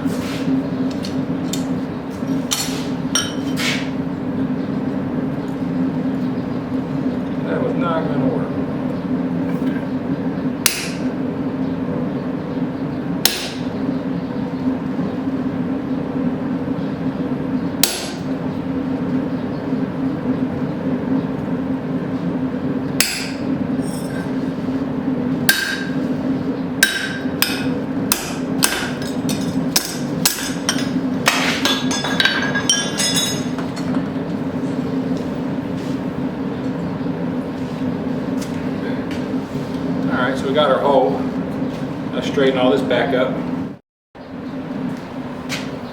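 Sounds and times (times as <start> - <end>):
steady low hum: 0.0 - 45.9
hammer striking punch on steel: 10.6 - 11.1, 13.2 - 13.7, 17.8 - 18.3, 23.0 - 23.5, 25.5 - 26.0, 26.8 - 32.0.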